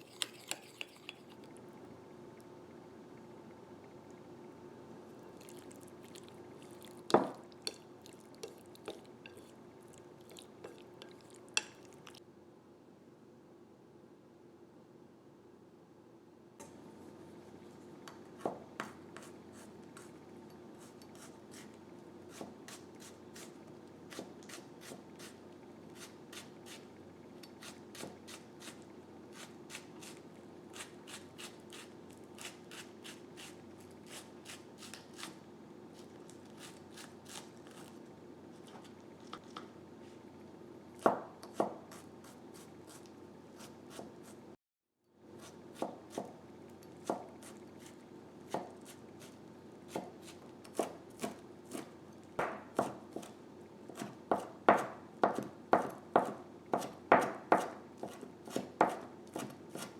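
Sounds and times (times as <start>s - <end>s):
faint low hum: 0.0s - 44.4s
knife chopping on cutting board: 7.1s - 7.4s, 18.4s - 19.4s, 24.1s - 25.0s, 41.0s - 42.0s, 43.6s - 44.2s, 45.4s - 46.4s, 47.0s - 47.6s, 48.5s - 49.0s, 49.9s - 53.3s, 53.9s - 59.9s.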